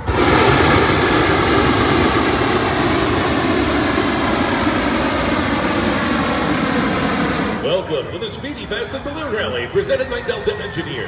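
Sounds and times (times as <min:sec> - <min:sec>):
loud engine-like roar: 0:00.0 - 0:07.7.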